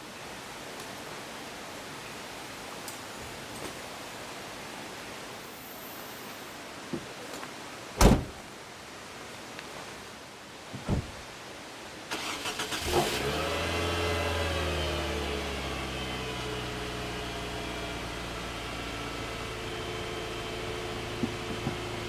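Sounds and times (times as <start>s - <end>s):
thump: 8.0s - 8.4s, 10.7s - 11.3s, 21.2s - 21.9s
car engine starting and idling: 12.1s - 22.0s.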